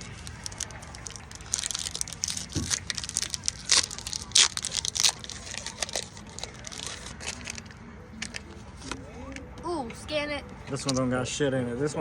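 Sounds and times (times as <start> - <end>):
foil wrapper crinkling and tearing: 0.0 - 8.4.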